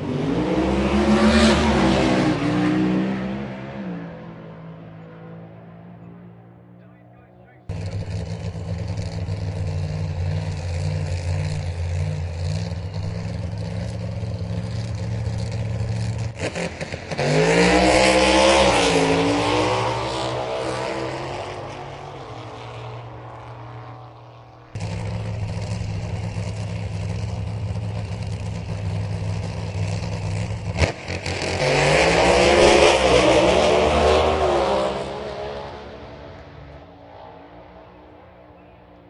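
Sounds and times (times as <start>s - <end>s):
race car accelerating hard: 0.0s - 39.0s
low engine rumble: 4.2s - 17.1s, 20.9s - 31.1s.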